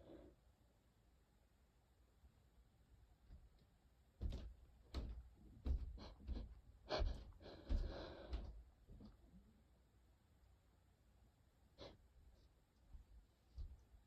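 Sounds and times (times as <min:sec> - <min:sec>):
person sniffling: 0:05.8 - 0:08.5, 0:11.8 - 0:12.1.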